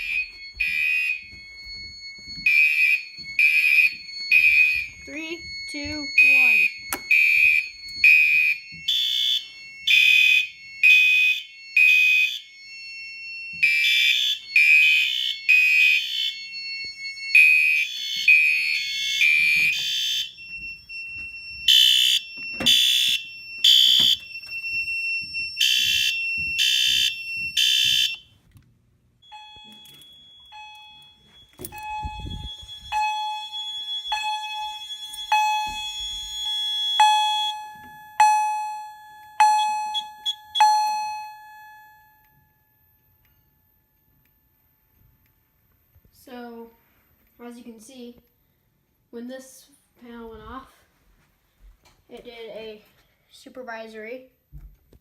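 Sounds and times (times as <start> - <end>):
steady high tone: 0.0 - 28.2, 29.2 - 44.5
alarm beep: 0.0 - 28.3, 29.2 - 41.4
fire alarm horns pulsing: 0.0 - 28.5, 29.2 - 41.4.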